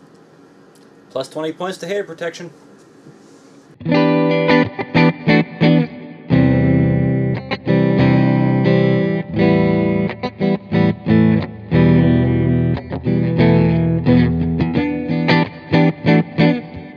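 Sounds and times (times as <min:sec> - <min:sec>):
distorted electric guitar chords: 0:03.8 - 0:16.9.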